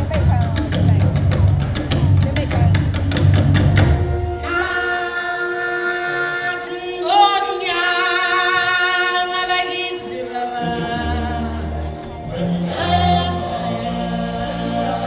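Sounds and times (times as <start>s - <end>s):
deep bass voices: 0.0s - 4.4s, 10.4s - 15.0s
choir singing held notes: 2.7s - 15.0s.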